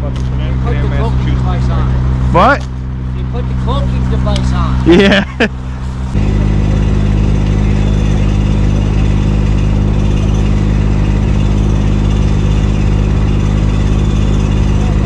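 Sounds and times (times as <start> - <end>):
engine idling: 0.0 - 15.0.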